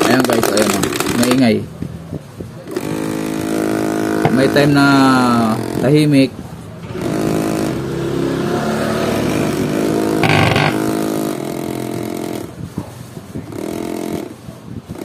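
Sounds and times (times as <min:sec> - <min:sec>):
massager motor buzzing rattle: 0:02.7 - 0:08.3, 0:09.0 - 0:12.6, 0:13.4 - 0:15.0.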